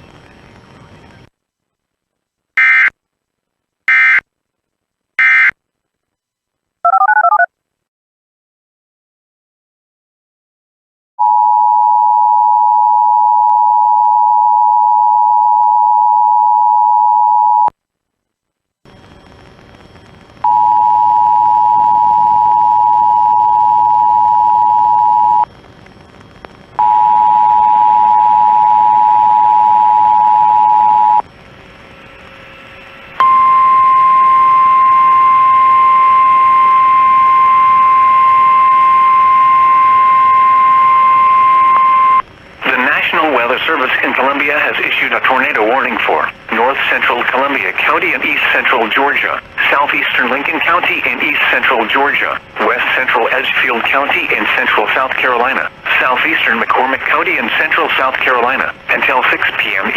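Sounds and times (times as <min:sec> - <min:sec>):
radio hiss: 0:00.0 - 0:02.9, 0:18.9 - 0:59.9.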